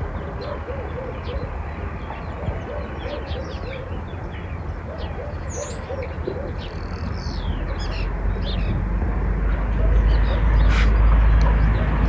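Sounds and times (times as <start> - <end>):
birds chirping: 0.0 - 12.0
pigeon cooing: 0.4 - 1.6, 2.3 - 4.0, 4.9 - 6.8, 9.7 - 12.0.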